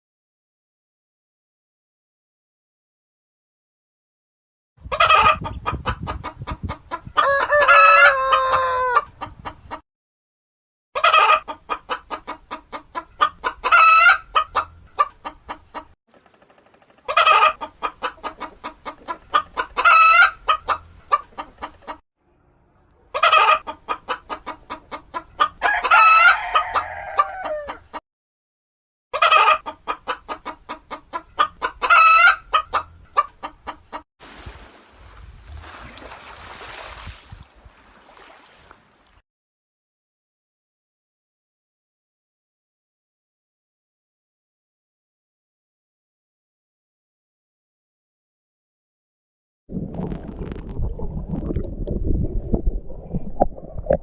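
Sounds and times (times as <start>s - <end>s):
chicken clucking and calling: 4.8s - 9.8s, 11.0s - 16.0s, 16.9s - 22.0s, 23.0s - 28.0s, 29.1s - 34.0s.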